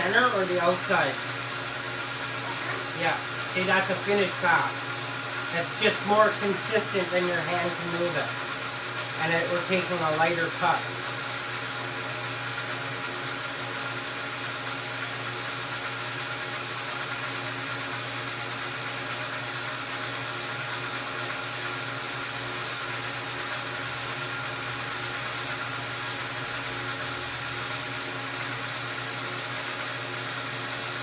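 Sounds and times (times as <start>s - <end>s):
metal lathe running: 0.0s - 31.0s.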